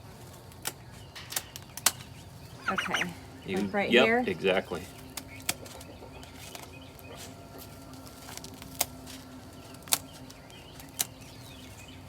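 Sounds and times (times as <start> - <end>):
scissors snipping feathers: 5.1 - 6.7, 8.3 - 11.7.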